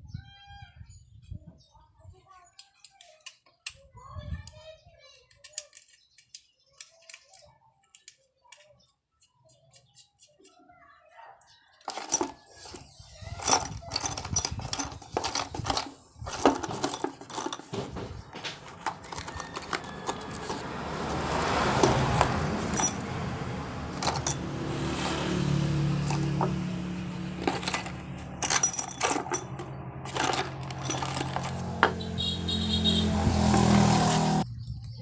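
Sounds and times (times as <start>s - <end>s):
metal engine parts clinking: 11.8s - 32.3s, 33.4s - 34.3s.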